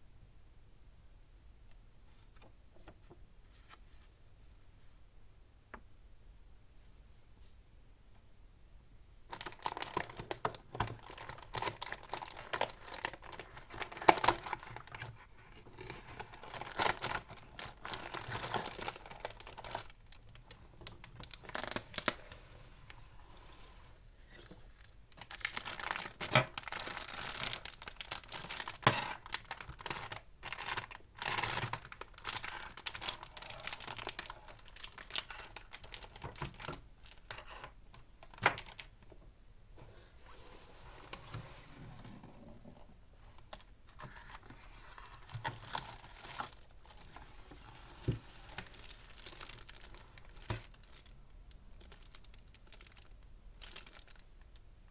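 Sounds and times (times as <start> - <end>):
packaging crinkling and tearing: 9.3 - 22.4, 24.6 - 39.0, 43.4 - 54.6.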